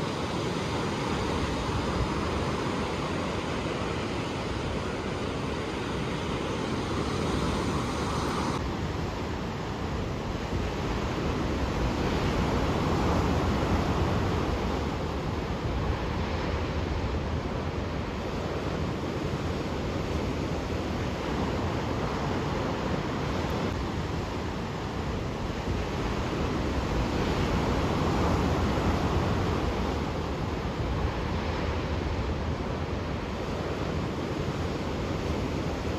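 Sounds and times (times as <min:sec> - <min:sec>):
ocean surf washing ashore: 0:00.0 - 0:35.9
wind on microphone: 0:00.0 - 0:35.9.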